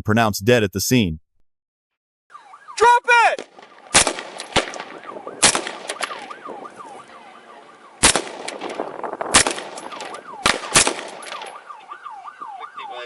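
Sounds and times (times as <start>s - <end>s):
police siren yelping: 2.3s - 3.9s, 4.7s - 13.0s
gunshots: 3.3s - 6.6s, 8.0s - 11.6s.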